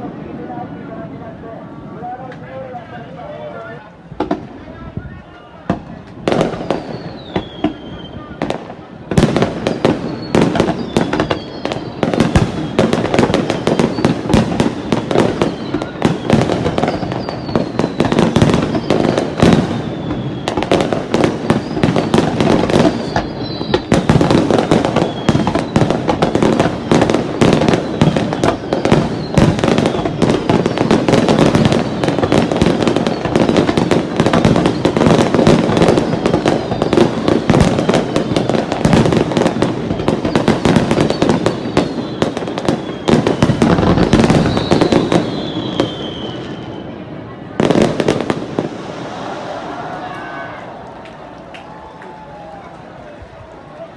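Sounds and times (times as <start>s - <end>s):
fireworks bursting and crackling: 0.0s - 53.9s
faint downward-sliding whistles: 6.5s - 8.4s, 15.4s - 20.9s, 22.8s - 25.9s, 40.2s - 47.1s.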